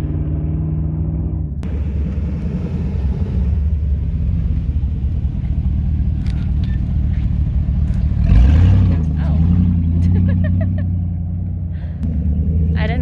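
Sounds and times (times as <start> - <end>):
off-road vehicle engine rumble: 0.0 - 13.0.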